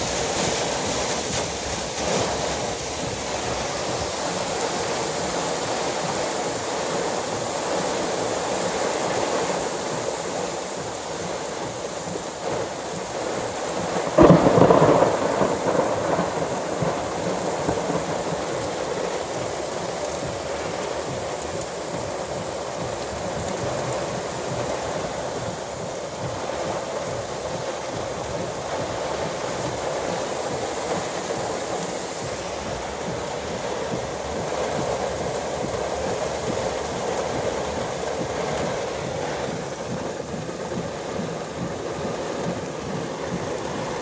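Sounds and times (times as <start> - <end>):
storm wind and rain: 0.0 - 44.0
thunder crack: 11.6 - 44.0.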